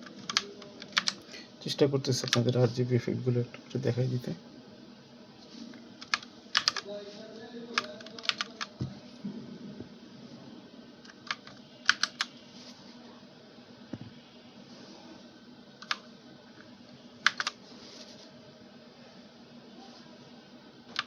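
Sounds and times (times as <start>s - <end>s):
mechanical keyboard keystroke clicks: 7.8s - 8.7s, 11.1s - 12.3s, 15.8s - 16.0s, 17.2s - 17.6s.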